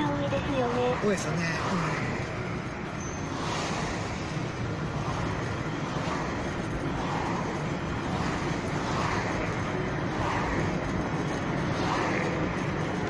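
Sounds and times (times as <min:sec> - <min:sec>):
road traffic noise: 0:00.0 - 0:13.0.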